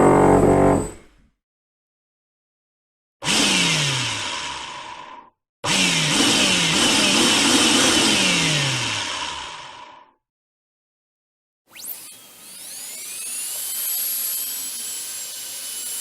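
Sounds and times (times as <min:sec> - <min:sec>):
power drill running: 0:03.2 - 0:09.8, 0:11.7 - 0:16.0.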